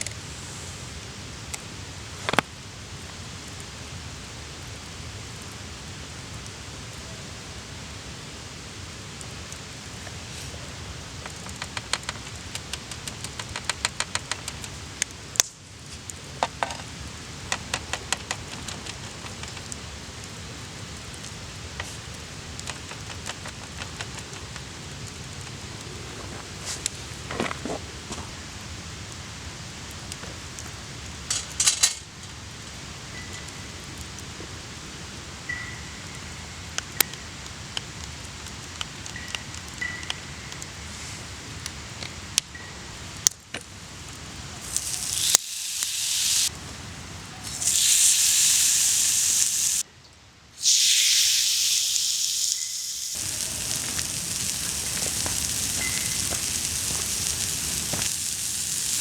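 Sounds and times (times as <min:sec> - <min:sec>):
campfire crackling and popping: 0:00.0 - 0:07.0, 0:08.6 - 0:32.9, 0:36.8 - 0:40.8, 0:41.6 - 0:49.8, 0:50.6 - 0:59.0
steak sizzling on griddle: 0:17.0 - 0:25.7, 0:43.9 - 0:46.6, 0:47.4 - 0:49.8, 0:50.6 - 0:59.0.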